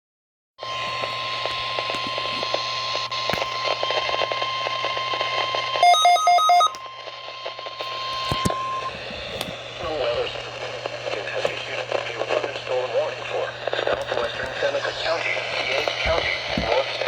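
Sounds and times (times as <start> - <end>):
radio static: 0.6 - 17.0
steady high alarm tone: 5.8 - 6.8, 7.9 - 9.0.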